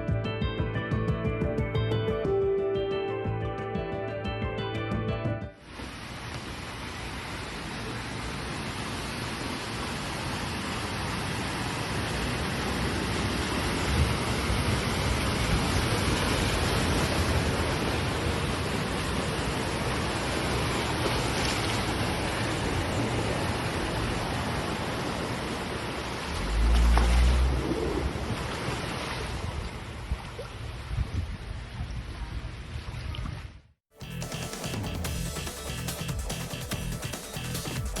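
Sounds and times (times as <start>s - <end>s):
wind and water rushing: 5.6s - 33.7s.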